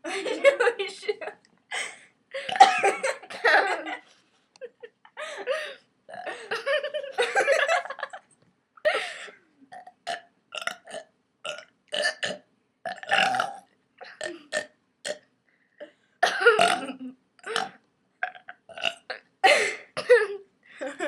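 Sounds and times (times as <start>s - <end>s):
girls burping: 2.4s - 3.9s, 5.5s - 6.5s, 16.2s - 20.4s.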